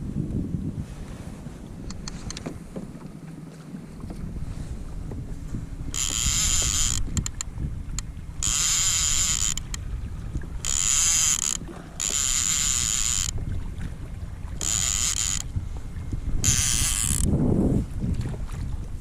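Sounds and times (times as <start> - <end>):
wind rumble on microphone: 0.0 - 19.0
high mechanical whirring: 5.8 - 9.8, 10.6 - 13.3, 14.6 - 15.5, 16.4 - 17.3
sharp clicks: 6.0 - 9.8.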